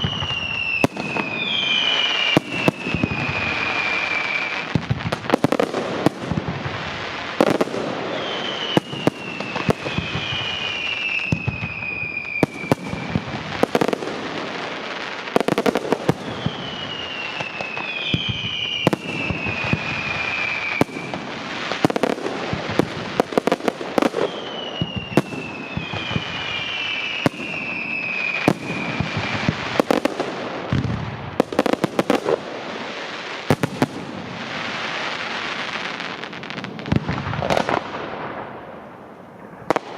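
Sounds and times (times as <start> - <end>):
firework whistles falling in pitch: 0.0 - 5.6, 7.4 - 30.1
firework bangs and crackling: 0.0 - 39.9.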